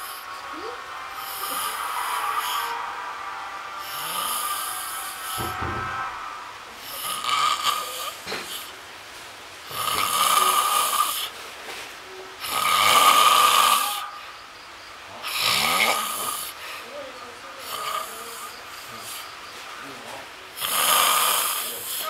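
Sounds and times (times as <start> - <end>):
person snoring loudly: 1.2 - 2.8, 3.8 - 5.6, 6.8 - 8.7, 9.7 - 11.3, 12.4 - 14.0, 15.2 - 16.6, 20.6 - 22.0.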